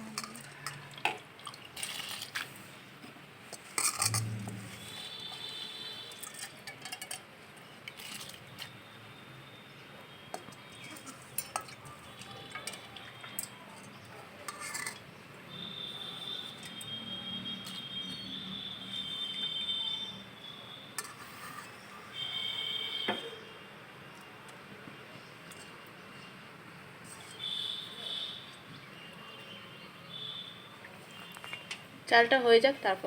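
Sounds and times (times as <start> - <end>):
metal utensils clattering against pot: 0.0 - 2.5, 3.5 - 8.7, 10.3 - 15.2, 21.0 - 21.9.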